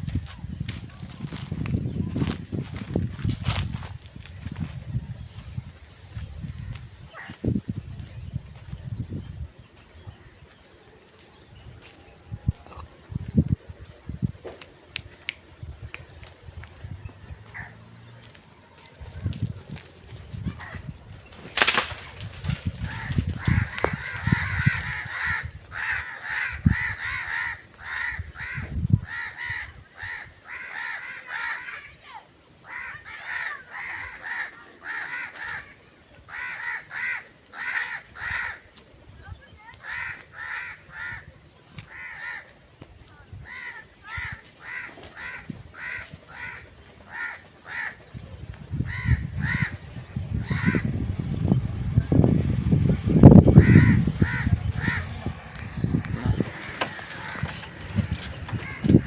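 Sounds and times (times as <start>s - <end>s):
crow cawing: 17.5s - 17.8s, 22.8s - 32.0s, 32.6s - 38.7s, 39.8s - 41.3s, 41.9s - 42.6s, 43.4s - 48.0s, 48.8s - 49.8s, 50.4s - 50.9s, 53.6s - 55.2s, 56.2s - 59.0s
bird harsh calls: 22.6s - 42.6s, 43.4s - 51.1s, 53.4s - 59.0s.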